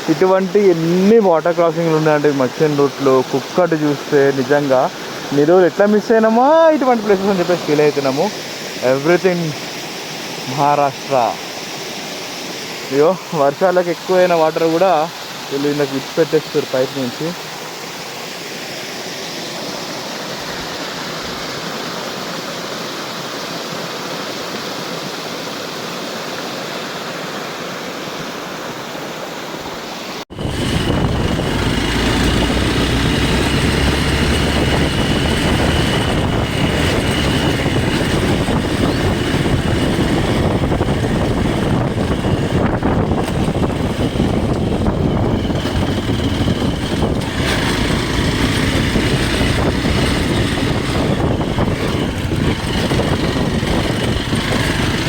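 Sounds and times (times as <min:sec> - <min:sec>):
water rushing down waterfall: 0:00.0 - 0:30.5
motorcycle engine running: 0:30.3 - 0:55.0
wind noise on microphone: 0:30.3 - 0:55.0.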